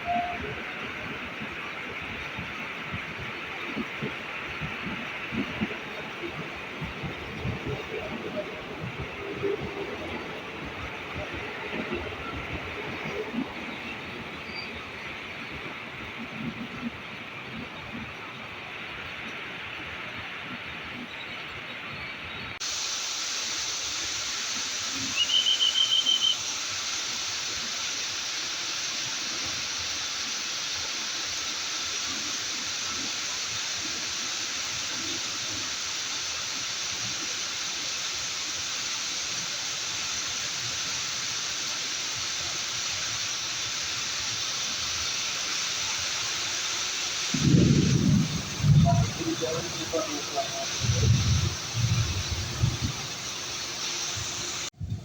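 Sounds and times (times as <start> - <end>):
high-pitched train horn blast: 0.0 - 0.9
heavy rain hissing: 0.0 - 55.0.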